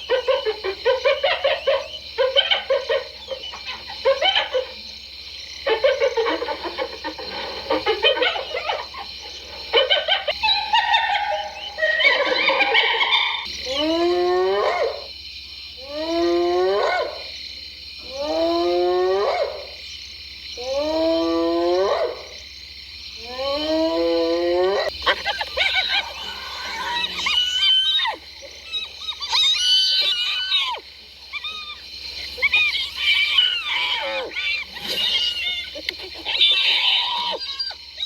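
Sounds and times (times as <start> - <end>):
hyena giggling: 0.0 - 5.0, 5.6 - 13.5, 24.8 - 38.0
hyena whooping: 9.7 - 15.1, 23.2 - 38.0.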